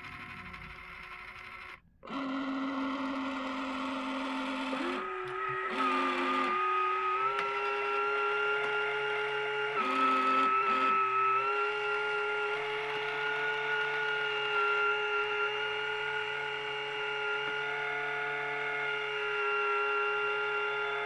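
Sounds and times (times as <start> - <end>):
toy robot gear motor whirring: 0.0 - 14.6.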